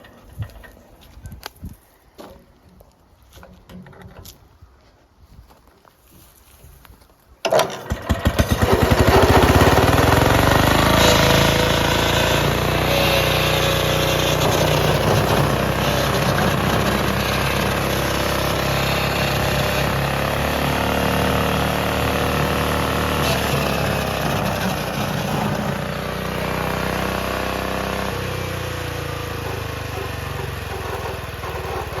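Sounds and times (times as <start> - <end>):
lawn mower engine revving: 7.5 - 32.0.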